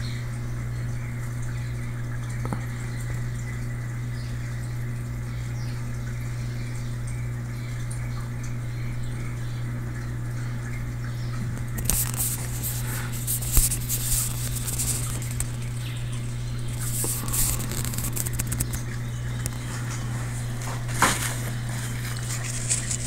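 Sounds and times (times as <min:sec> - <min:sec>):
aquarium equipment humming: 0:00.0 - 0:23.0
crackling and light clicks: 0:01.2 - 0:03.9, 0:10.0 - 0:23.0.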